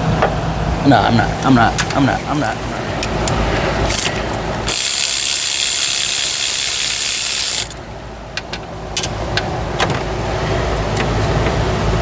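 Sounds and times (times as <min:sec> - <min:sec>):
pneumatic air ratchet hissing: 0:03.9 - 0:07.8.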